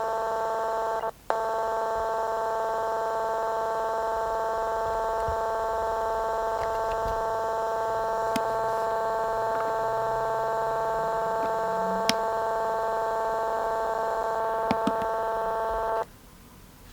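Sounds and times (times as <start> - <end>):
electronic buzz from speaker: 0.0 - 16.1
faint clicks: 14.5 - 16.0.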